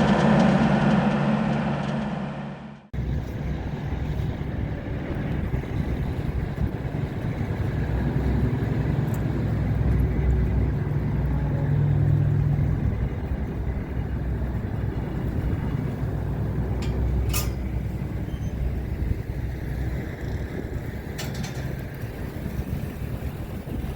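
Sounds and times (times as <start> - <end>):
vehicle engine and road rumble: 0.0 - 23.9.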